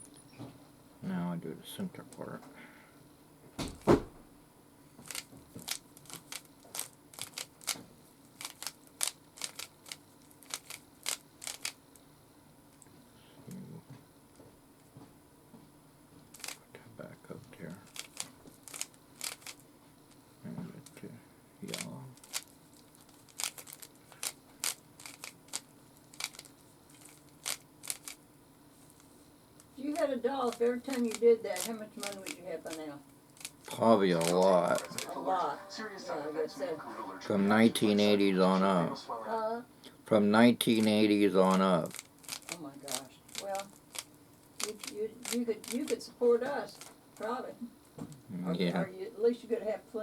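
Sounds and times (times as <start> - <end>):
plastic puzzle cube clicking: 5.1 - 7.8, 8.4 - 11.8, 17.9 - 19.6, 21.7 - 28.2, 30.5 - 32.8, 41.8 - 45.9.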